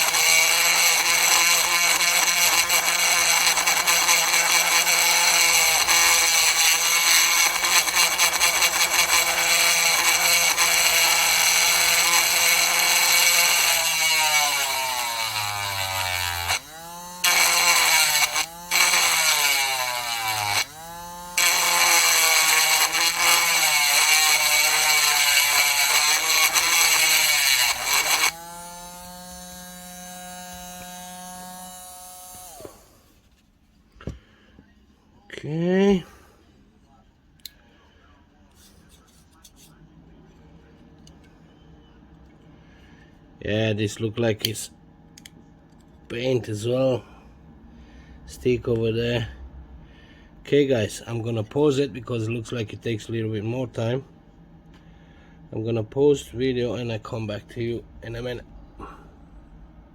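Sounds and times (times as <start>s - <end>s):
electric power tool whining: 0.0s - 33.0s.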